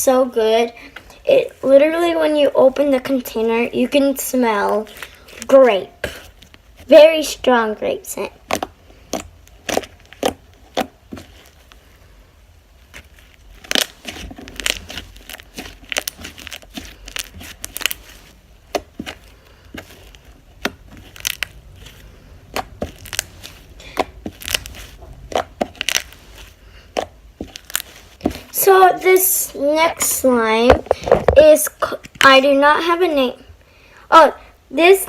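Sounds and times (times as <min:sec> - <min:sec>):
slime squished by hand: 0:08.4 - 0:11.8, 0:12.8 - 0:29.3.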